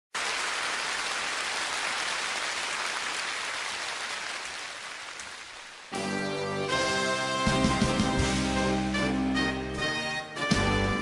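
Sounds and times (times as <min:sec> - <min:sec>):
music with sustained notes: 0:05.9 - 0:11.0.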